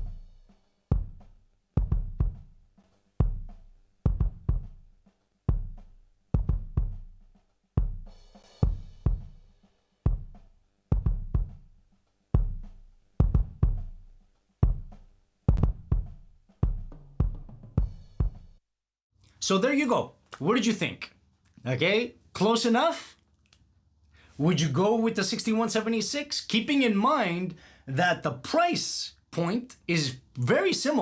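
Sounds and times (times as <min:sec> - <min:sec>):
kick drum and snare hits: 0:00.0 - 0:02.6, 0:03.2 - 0:04.9, 0:05.5 - 0:09.4, 0:10.1 - 0:11.8, 0:12.4 - 0:18.6.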